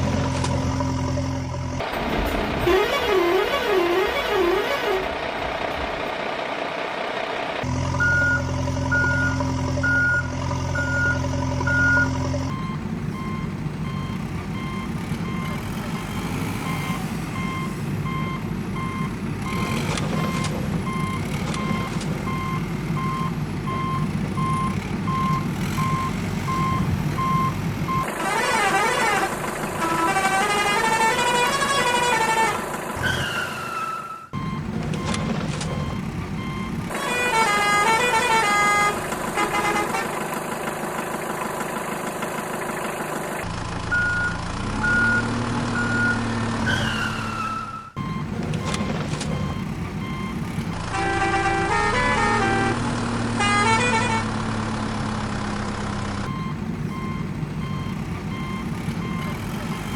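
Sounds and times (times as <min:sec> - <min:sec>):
reversing alarm beeping: 0:07.9 - 0:28.1, 0:33.4 - 0:36.9, 0:43.9 - 0:50.7, 0:56.2 - 0:59.9
low engine rumble: 0:53.3 - 0:59.9.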